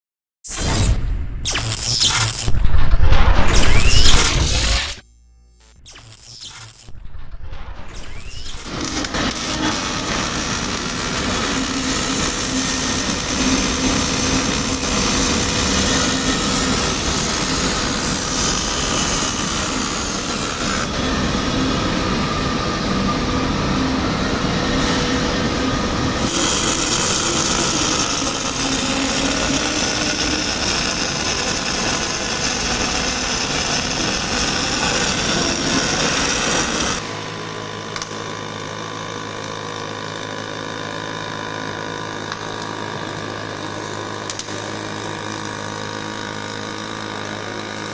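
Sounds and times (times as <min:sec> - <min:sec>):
welder arc crackling: 0:01.4 - 0:21.0, 0:26.1 - 0:37.1.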